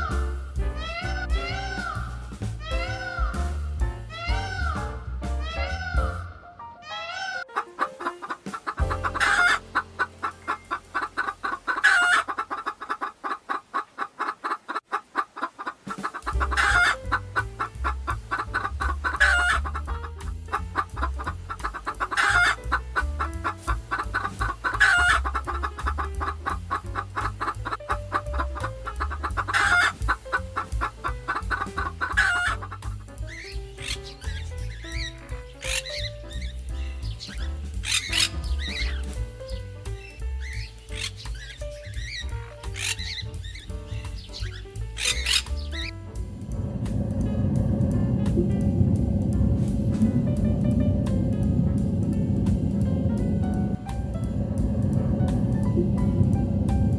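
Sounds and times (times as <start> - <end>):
background music with low beat: 0.0 - 6.4, 8.0 - 12.1, 16.0 - 56.9
chickens clucking: 7.3 - 17.0, 23.9 - 25.5, 31.3 - 32.7.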